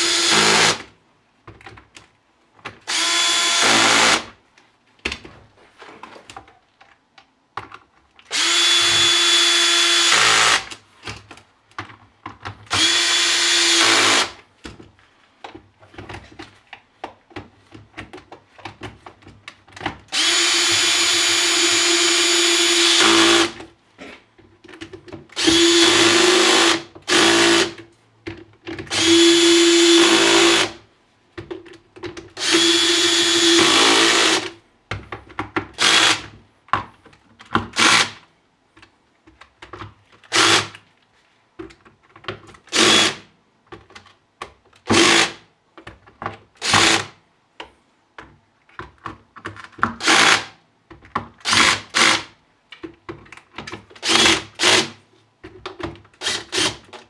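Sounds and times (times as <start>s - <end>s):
drill-driver motor whining: 0.0s - 0.8s, 2.9s - 4.2s, 8.3s - 10.7s, 12.7s - 14.3s, 20.2s - 23.6s, 25.4s - 27.8s, 28.9s - 30.8s, 32.4s - 34.5s.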